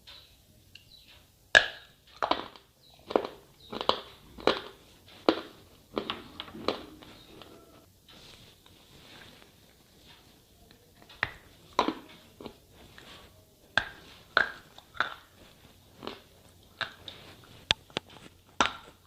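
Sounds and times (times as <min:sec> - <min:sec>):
chewing crunches: 0:01.6 - 0:07.8, 0:11.0 - 0:19.0.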